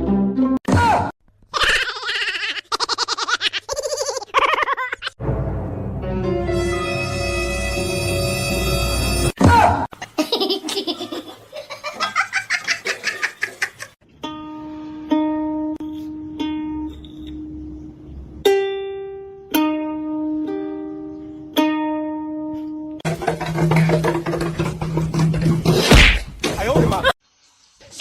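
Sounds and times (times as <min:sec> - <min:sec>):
plucked-string melody: 0:05.2 - 0:09.2, 0:14.0 - 0:25.8.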